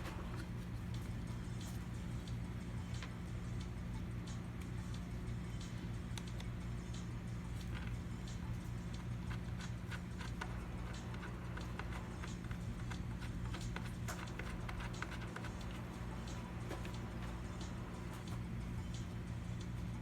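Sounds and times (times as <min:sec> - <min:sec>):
low hum: 0:00.0 - 0:20.0
computer parts clicking and tapping: 0:07.6 - 0:18.4.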